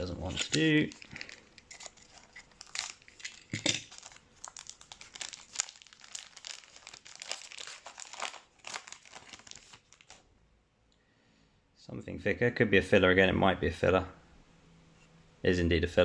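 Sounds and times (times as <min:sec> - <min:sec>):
card pack wrapper crinkling: 0:00.0 - 0:10.2.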